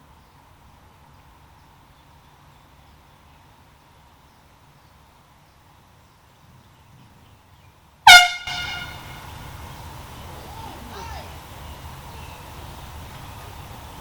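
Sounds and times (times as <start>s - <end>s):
air horn blast: 8.1s - 9.4s.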